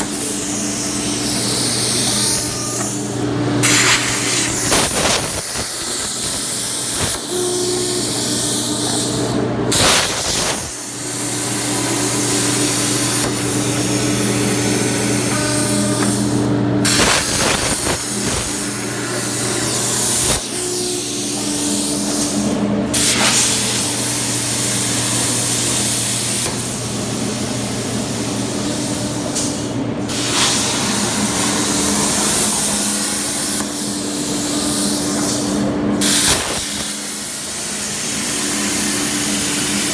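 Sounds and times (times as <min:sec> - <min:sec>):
low machine hum: 0:00.0 - 0:04.7, 0:10.6 - 0:36.0
cutting torch hissing: 0:03.6 - 0:26.8, 0:30.1 - 0:39.9.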